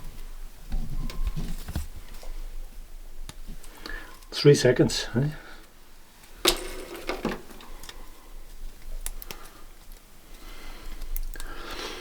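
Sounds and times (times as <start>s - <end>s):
low background hiss: 0.0s - 12.0s
faint clicks: 8.8s - 11.6s.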